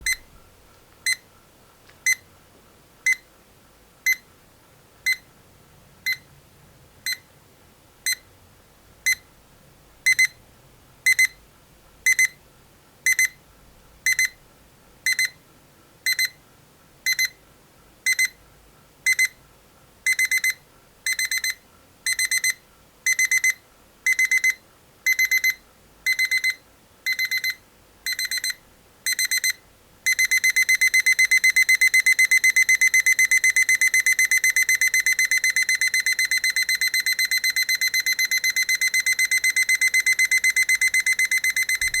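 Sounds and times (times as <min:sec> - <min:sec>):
alarm clock beeping: 0:20.1 - 0:42.0.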